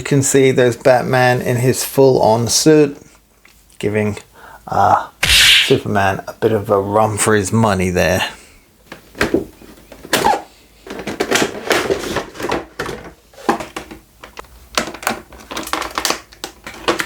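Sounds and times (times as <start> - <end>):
cardboard and plastic packaging rustling: 8.8 - 17.0.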